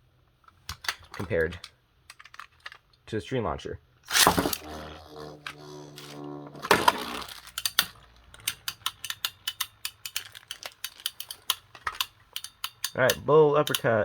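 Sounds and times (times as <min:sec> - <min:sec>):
ripcord launcher gear whine: 0:04.1 - 0:07.8
spinning tops released: 0:04.1 - 0:10.0.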